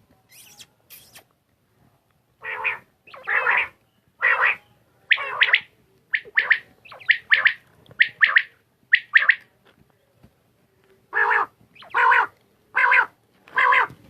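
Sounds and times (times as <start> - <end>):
quail calling: 2.4 - 9.5, 11.1 - 14.0.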